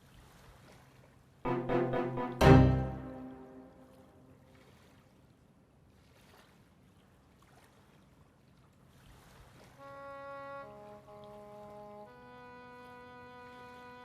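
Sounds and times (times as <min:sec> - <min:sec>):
soft orchestral music: 0:01.5 - 0:04.2, 0:09.8 - 0:14.0.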